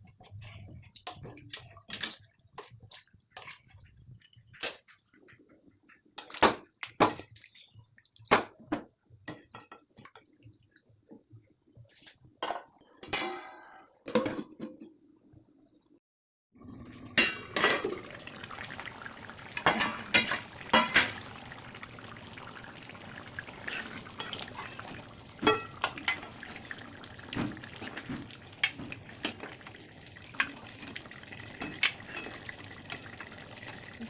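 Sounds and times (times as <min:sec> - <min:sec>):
utensils clinking against pots: 0:17.1 - 0:18.8, 0:19.5 - 0:21.8, 0:23.6 - 0:26.8, 0:31.5 - 0:33.2.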